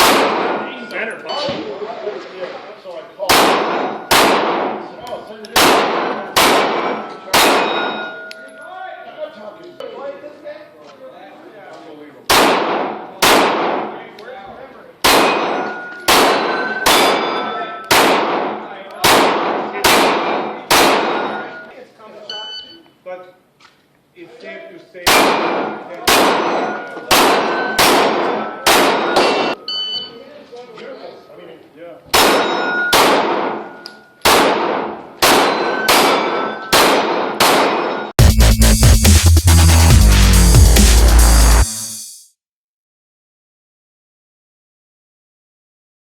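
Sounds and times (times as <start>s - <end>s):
pistol shots: 0.0s - 0.9s, 3.2s - 8.2s, 12.3s - 14.2s, 15.0s - 21.6s, 25.1s - 29.6s, 32.1s - 38.1s
steel target clanging: 5.8s - 8.7s, 15.2s - 17.9s, 20.2s - 21.7s, 25.6s - 29.6s, 32.3s - 33.9s, 35.3s - 36.8s.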